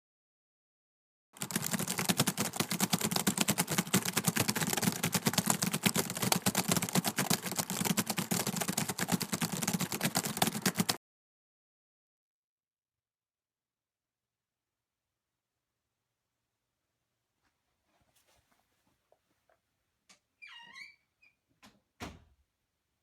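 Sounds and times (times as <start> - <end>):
door hinge creaking: 20.4 - 22.3.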